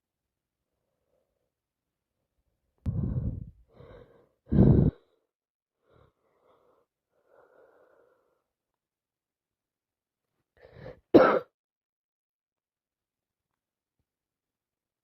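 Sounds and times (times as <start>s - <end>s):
person breathing heavily: 2.8s - 8.5s.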